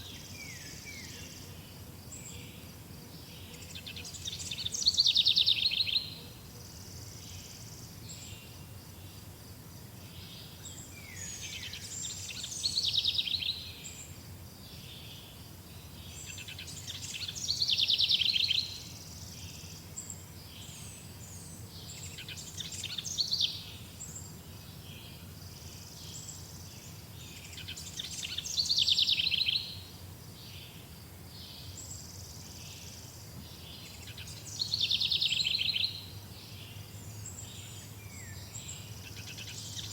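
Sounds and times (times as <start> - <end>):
low steady background hum: 0.0 - 39.9
songbird singing loudly: 3.4 - 8.5, 10.3 - 14.1, 16.1 - 24.2, 25.0 - 30.8, 31.4 - 39.9.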